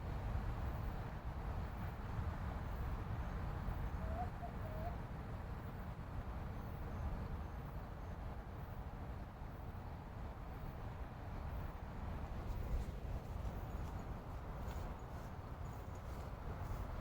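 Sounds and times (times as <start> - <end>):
bird call: 4.0 - 5.0.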